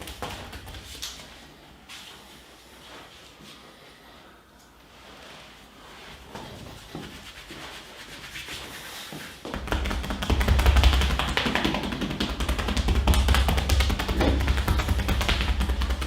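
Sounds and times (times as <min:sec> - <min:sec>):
fast rhythmic hand tapping: 0:00.0 - 0:01.2, 0:09.4 - 0:16.0
hands tapping and rubbing: 0:06.3 - 0:16.0.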